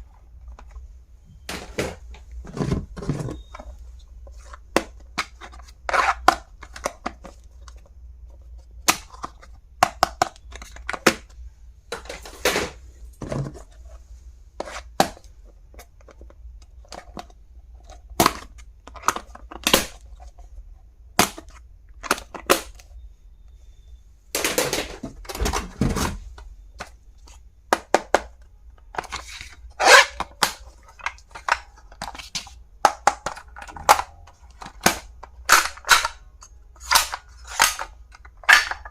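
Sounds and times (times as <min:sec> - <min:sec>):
plastic items clicking and snapping: 0:15.0 - 0:20.3, 0:24.3 - 0:38.9.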